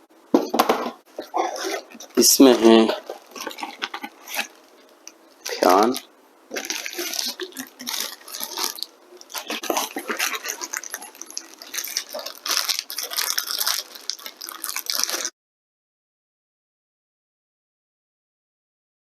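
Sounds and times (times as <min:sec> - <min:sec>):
plastic packaging rustling: 0:00.4 - 0:15.3.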